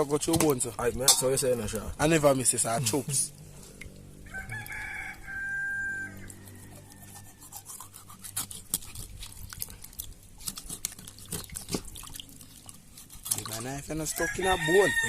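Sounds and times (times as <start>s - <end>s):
steady low hum: 0.0s - 14.0s
rooster crowing: 4.2s - 7.6s, 14.0s - 15.0s.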